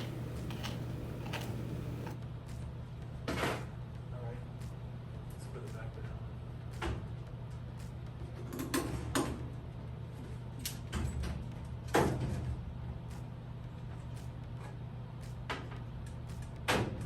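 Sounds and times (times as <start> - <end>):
knocks and clunks of handled parts: 0.0 - 2.2
steady low hum: 0.0 - 2.2.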